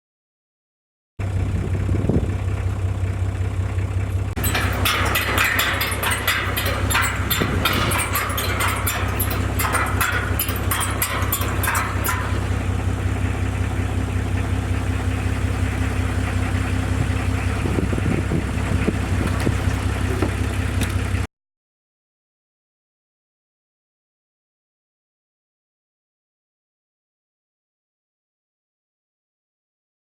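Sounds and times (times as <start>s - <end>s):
vehicle engine humming: 1.2s - 21.3s
rapid clicking rattle: 4.4s - 13.7s.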